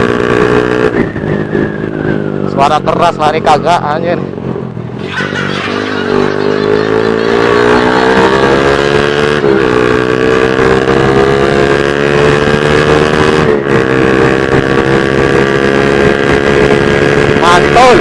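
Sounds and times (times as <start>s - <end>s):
motorcycle engine accelerating: 4.1s - 18.0s.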